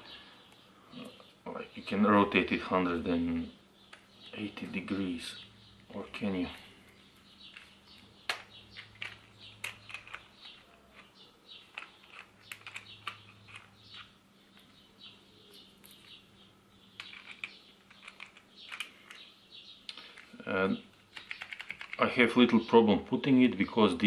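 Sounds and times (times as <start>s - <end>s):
small plastic clicks and squeaks: 7.5s - 14.8s, 17.0s - 19.3s, 21.0s - 22.0s.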